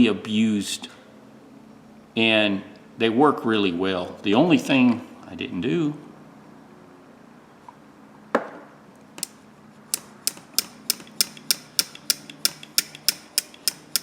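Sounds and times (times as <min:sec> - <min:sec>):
pliers jaws clicking: 0:09.2 - 0:14.0.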